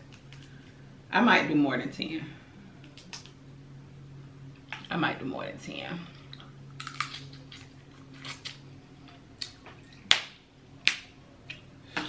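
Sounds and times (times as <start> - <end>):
low hum: 0.0 - 12.0
wet mouth clicks and smacks: 2.8 - 3.4.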